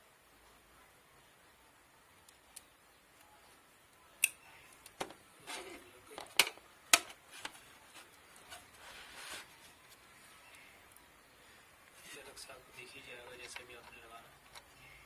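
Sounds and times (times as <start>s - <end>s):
cables rustling and scraping: 4.4s - 15.0s.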